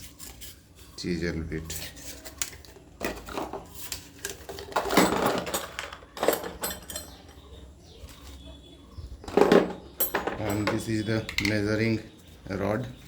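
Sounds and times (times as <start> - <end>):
metal accessories clinking and rattling: 1.7 - 8.3, 9.2 - 12.0.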